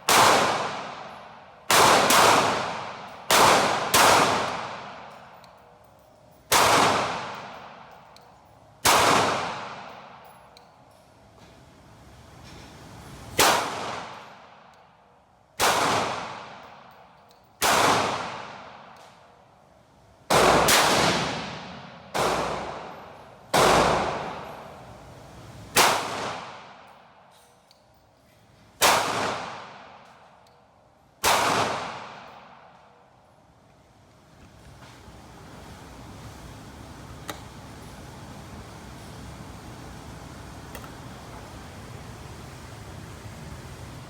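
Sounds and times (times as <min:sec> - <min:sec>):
pistol shots echoing: 0:00.0 - 0:05.4, 0:06.5 - 0:08.0, 0:08.8 - 0:10.3, 0:15.6 - 0:16.8, 0:17.6 - 0:19.0, 0:20.3 - 0:24.8, 0:25.8 - 0:26.9, 0:28.8 - 0:30.0, 0:31.2 - 0:32.8.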